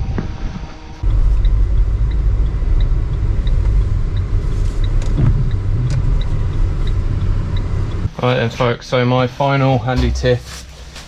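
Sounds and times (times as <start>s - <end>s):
engine low rumble: 0.0s - 11.0s
faint regular ticking: 1.0s - 8.8s.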